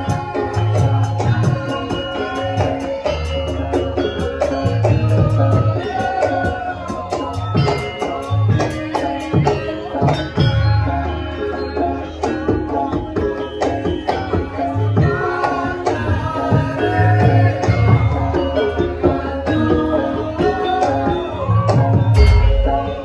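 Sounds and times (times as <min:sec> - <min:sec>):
metallophones and gongs ringing: 0:00.0 - 0:23.0
wavering melody line: 0:00.0 - 0:23.0
hand drum strokes: 0:21.7 - 0:23.0.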